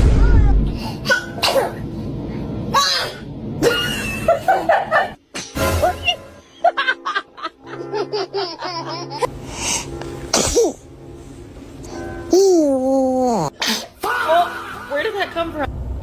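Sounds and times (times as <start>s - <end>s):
baby sneezing: 1.0s - 1.8s, 10.3s - 10.8s, 13.5s - 14.0s
music playing: 3.6s - 15.7s.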